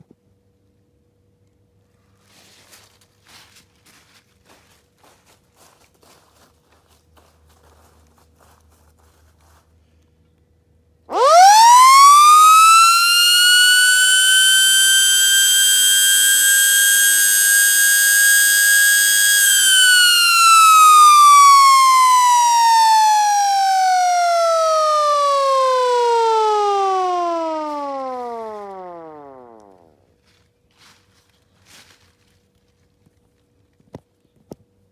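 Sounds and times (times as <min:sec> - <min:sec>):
warning siren wailing: 0:11.1 - 0:29.9.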